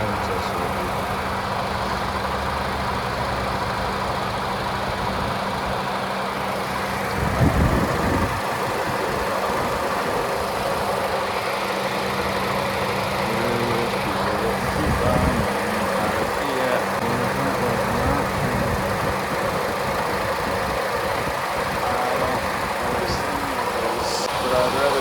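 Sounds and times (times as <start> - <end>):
car engine idling: 0.0 - 25.0
rush of noise: 6.3 - 25.0.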